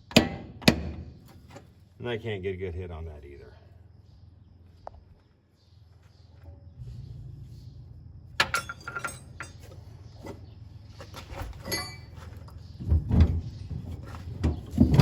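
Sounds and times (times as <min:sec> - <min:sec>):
steady low rumble: 0:06.6 - 0:10.9
metallic knocks and clinks: 0:08.4 - 0:10.4, 0:11.4 - 0:12.6.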